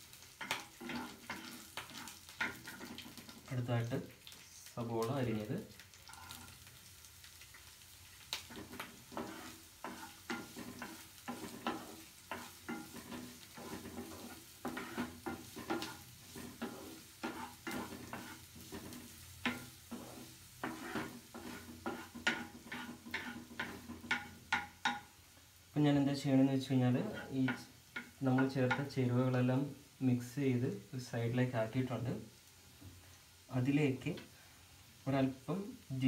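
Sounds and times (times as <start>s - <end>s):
quiet sizzling: 0.0s - 36.0s
spatula scraping frying pan: 0.3s - 3.5s, 6.0s - 6.6s, 8.3s - 25.1s, 27.0s - 28.9s.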